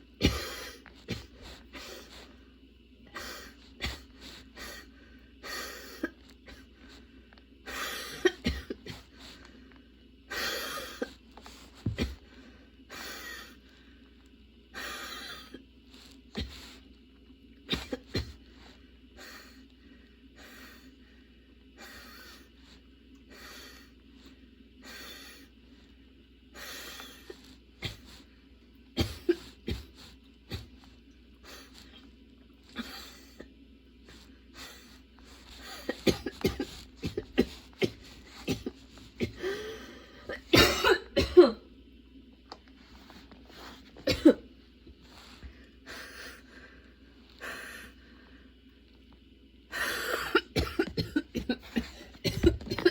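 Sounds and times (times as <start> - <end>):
woman coughing: 0.2 - 1.4, 3.2 - 4.1, 8.0 - 9.1, 17.7 - 18.4, 29.0 - 30.7, 35.6 - 39.7, 40.3 - 41.7, 44.0 - 44.5, 49.8 - 52.9.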